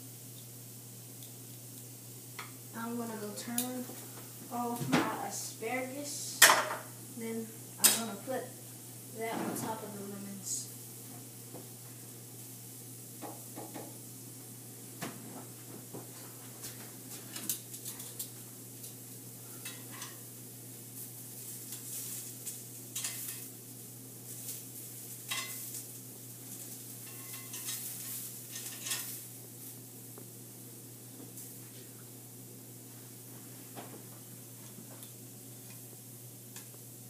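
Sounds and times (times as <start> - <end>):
steady low hum: 0.0 - 37.0
utensils clinking on a pan and plate: 19.5 - 20.2, 21.7 - 23.5, 25.2 - 25.8, 26.6 - 29.2.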